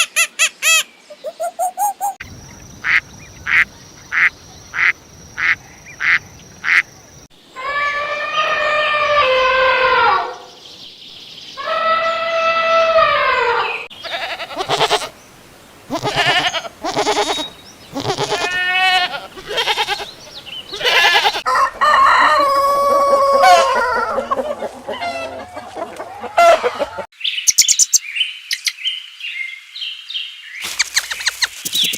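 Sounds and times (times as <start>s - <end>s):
small birds chirping: 13.6s - 21.4s, 27.2s - 31.9s
chickens clucking: 19.2s - 27.1s
rooster crowing: 20.8s - 27.1s.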